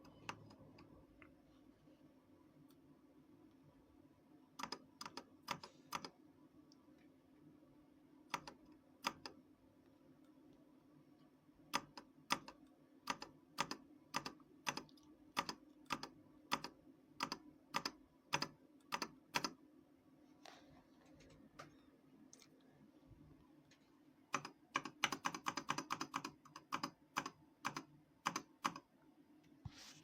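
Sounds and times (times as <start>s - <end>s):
faint steady hum: 0.0s - 30.0s
mechanical keyboard keystrokes: 4.6s - 6.1s, 8.3s - 9.4s, 11.7s - 19.6s, 24.3s - 28.9s.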